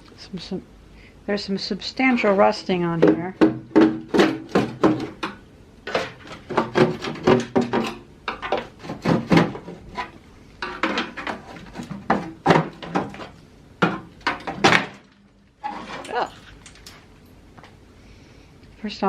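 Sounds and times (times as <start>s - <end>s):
tools and metal parts clattering: 3.8s - 17.4s.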